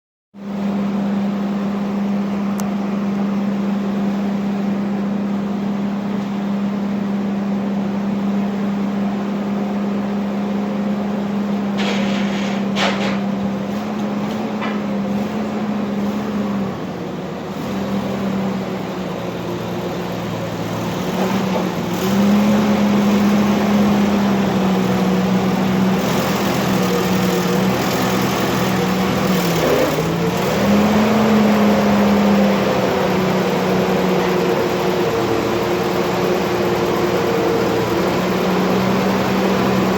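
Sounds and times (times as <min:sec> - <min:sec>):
steady mechanical hum: 0:00.4 - 0:39.9.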